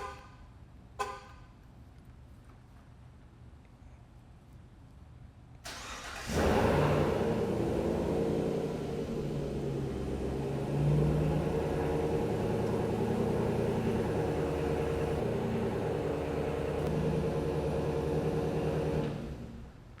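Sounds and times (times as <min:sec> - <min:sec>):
pickup truck engine idling: 0:05.7 - 0:20.0.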